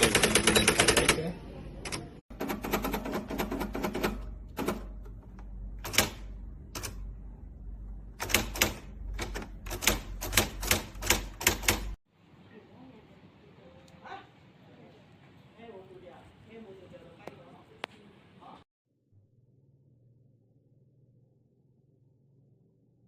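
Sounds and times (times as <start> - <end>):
electronic typewriter strikes clattering: 0.0 - 1.2, 1.8 - 7.1, 8.2 - 12.0.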